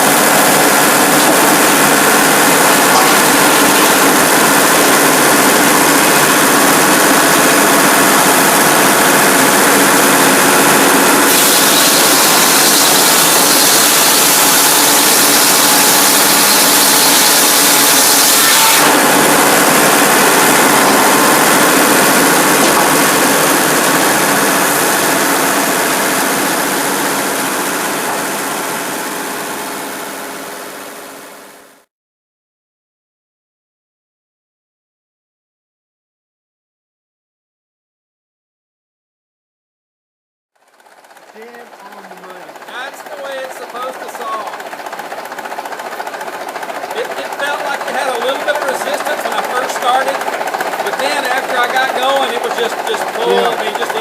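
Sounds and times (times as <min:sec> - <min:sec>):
diesel engine running sawmill: 0:00.0 - 0:31.9, 0:40.6 - 0:54.0.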